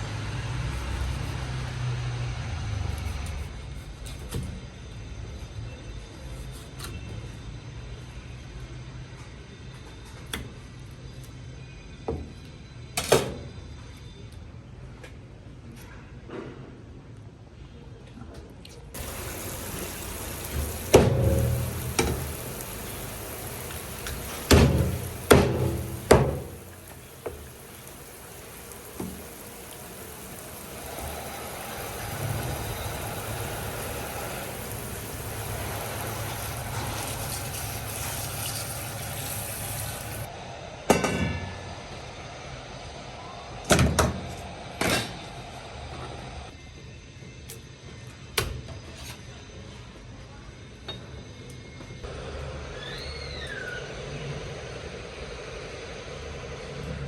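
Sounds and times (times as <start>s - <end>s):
steady hiss of running water: 19.0s - 40.3s
kitchen knocks: 24.2s - 27.4s.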